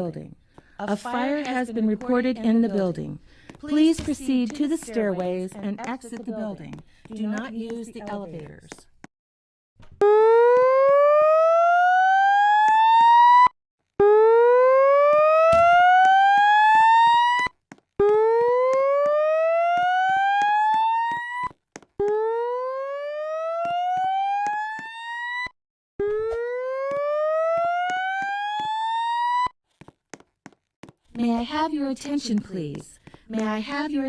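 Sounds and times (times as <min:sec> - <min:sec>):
slow-whoop alarm tone: 0:10.0 - 0:29.5.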